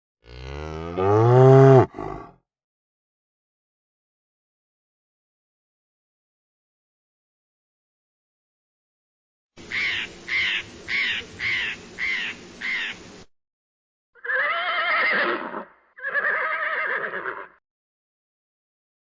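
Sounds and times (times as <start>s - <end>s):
animal calls: 0.6s - 2.3s.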